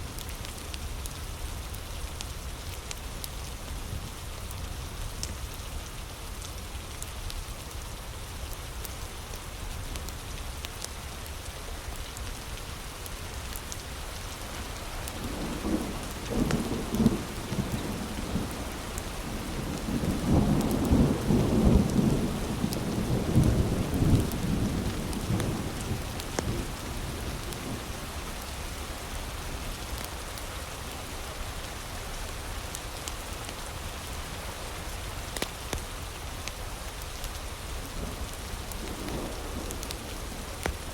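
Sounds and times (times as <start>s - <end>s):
heavy rain: 0.0s - 40.9s
low roll of thunder: 14.3s - 29.4s.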